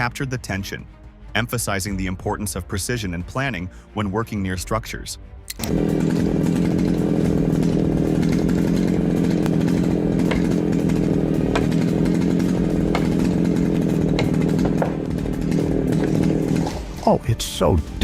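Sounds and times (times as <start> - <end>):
chainsaw engine running: 5.5 - 17.5.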